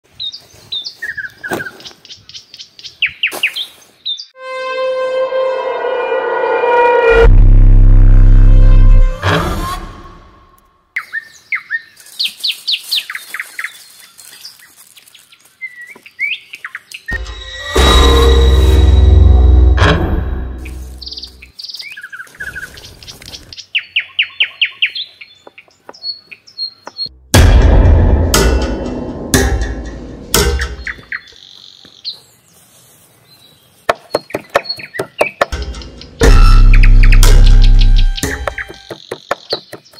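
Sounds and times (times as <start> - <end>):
birds chirping: 20.6 - 27.2, 30.3 - 39.9
heavy thud: 27.4 - 30.7
sharp knocks: 33.9 - 39.9.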